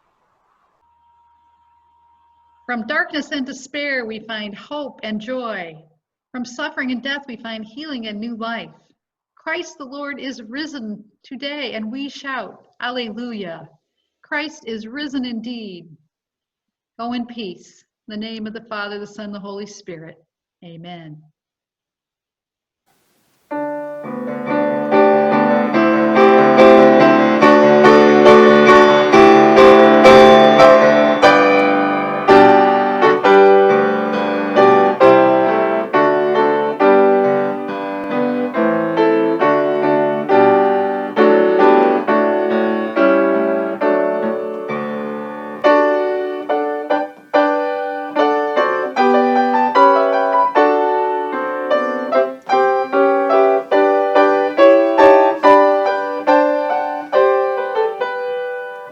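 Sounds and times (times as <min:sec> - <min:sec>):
piano playing: 0:23.5 - 0:58.9.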